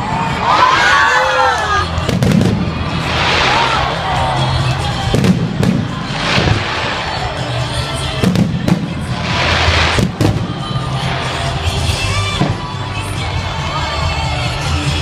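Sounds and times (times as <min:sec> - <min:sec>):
background music: 0:00.0 - 0:15.0
crackling hiss of fireworks: 0:01.9 - 0:15.0
fireworks bangs: 0:02.0 - 0:13.4.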